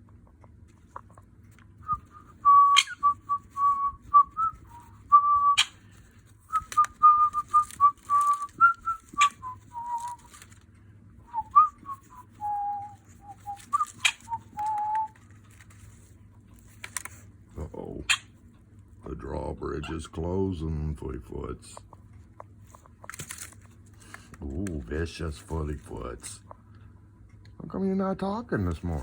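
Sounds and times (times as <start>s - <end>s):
cockatiel whistling: 1.8s - 5.8s, 6.5s - 10.3s, 11.3s - 15.2s.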